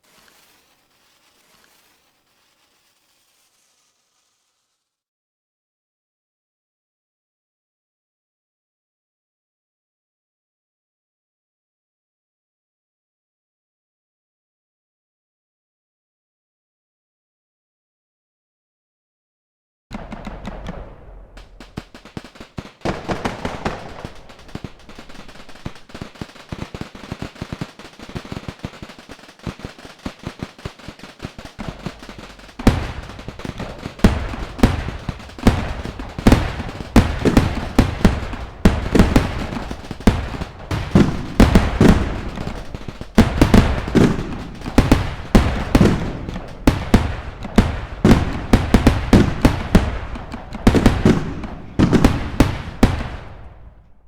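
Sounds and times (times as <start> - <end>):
fireworks crackling and banging: 0.0 - 4.9, 19.9 - 54.0.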